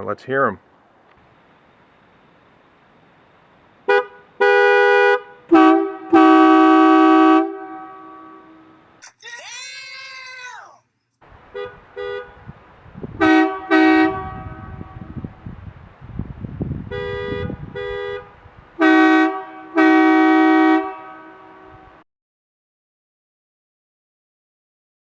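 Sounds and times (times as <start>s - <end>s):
train horn blasts: 3.9s - 8.8s, 11.6s - 12.5s, 13.2s - 15.4s, 16.9s - 22.0s.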